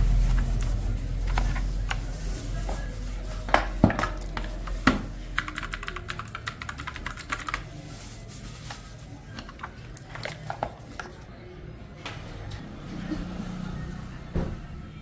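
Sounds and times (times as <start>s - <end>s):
clicky mechanical keyboard typing: 5.4s - 7.6s.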